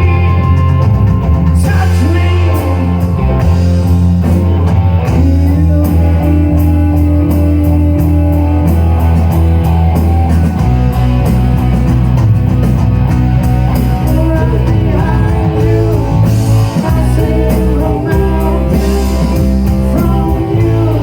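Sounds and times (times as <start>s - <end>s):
bass guitar: 0.0s - 21.0s
drum kit cymbal beat: 0.0s - 21.0s.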